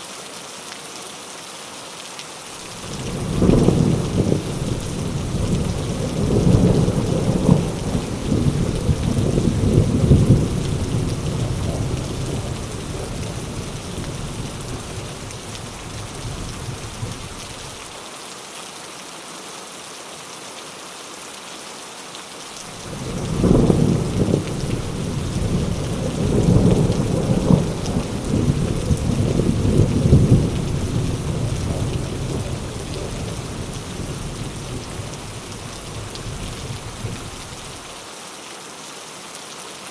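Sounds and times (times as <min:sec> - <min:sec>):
heavy rain falling: 0:00.0 - 0:39.9
thunder rumbling: 0:02.6 - 0:17.8, 0:22.7 - 0:37.8.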